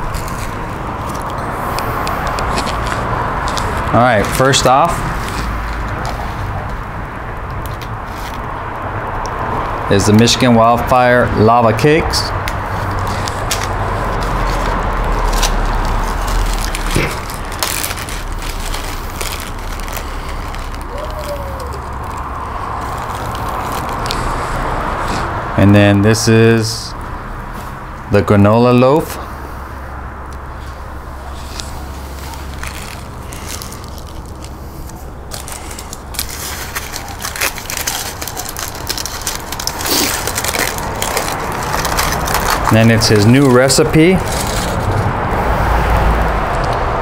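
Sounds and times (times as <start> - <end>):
packaging crinkling: 0.0 - 8.6, 12.4 - 24.8, 30.6 - 45.2
rushing noise with low rumble: 0.0 - 47.0.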